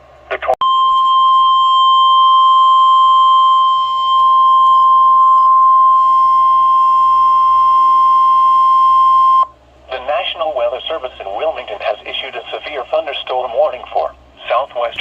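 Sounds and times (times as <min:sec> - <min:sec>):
steady alarm tone: 0:00.6 - 0:09.5.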